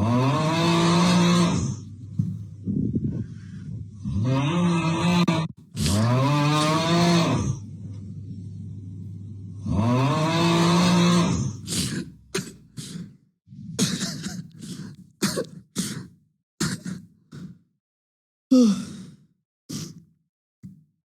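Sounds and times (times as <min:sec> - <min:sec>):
man snoring: 0:00.0 - 0:08.7, 0:09.5 - 0:12.2
throaty snorts and gasps: 0:11.3 - 0:17.6.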